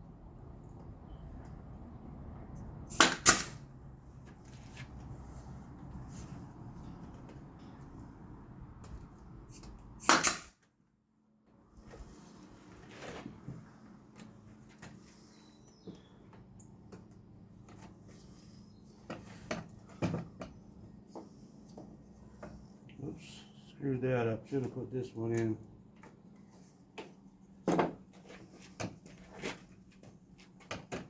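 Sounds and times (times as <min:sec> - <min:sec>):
knocks and clicks of wood and tools: 0:27.0 - 0:29.2.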